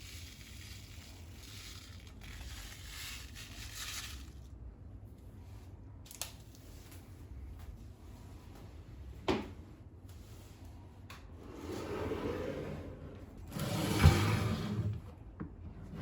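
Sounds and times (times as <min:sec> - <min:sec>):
rustling scrape: 0:00.0 - 0:04.5.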